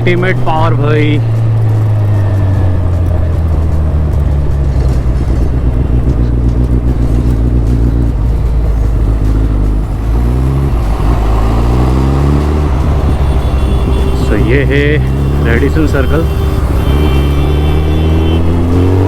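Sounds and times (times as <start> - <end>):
motorcycle engine running hard: 0.0 - 19.0.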